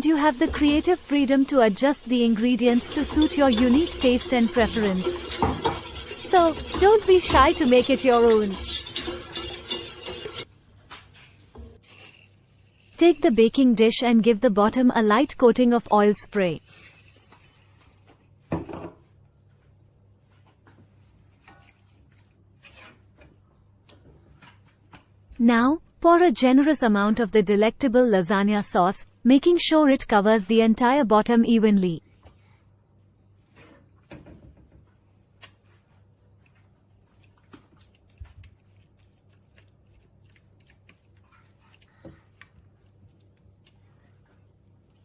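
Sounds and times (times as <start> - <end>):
cooking oil spray hissing: 0.0 - 17.8
sauce squishing: 37.0 - 43.9.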